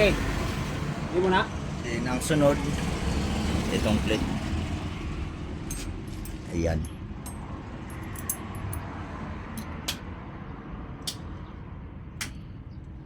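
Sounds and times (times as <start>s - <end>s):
metal parts and tools clicking: 5.7s - 8.9s.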